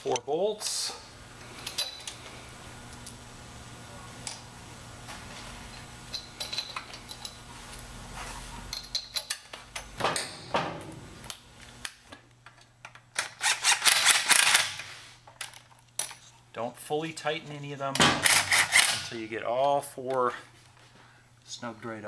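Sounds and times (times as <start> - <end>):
metal bolts clinking: 1.6 - 2.2, 6.1 - 7.4, 8.7 - 10.4.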